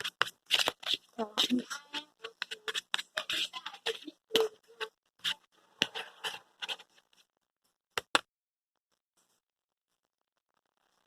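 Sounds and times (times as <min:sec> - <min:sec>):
slime squishing: 0:00.0 - 0:07.0.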